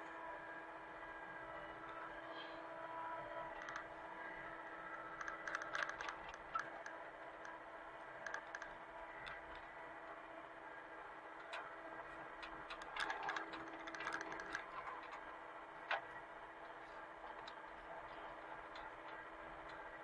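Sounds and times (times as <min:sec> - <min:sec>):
excavator engine running: 0:00.0 - 0:20.0
machine clicks and clanks: 0:03.5 - 0:03.9, 0:05.1 - 0:07.5, 0:08.2 - 0:09.7, 0:11.4 - 0:20.0.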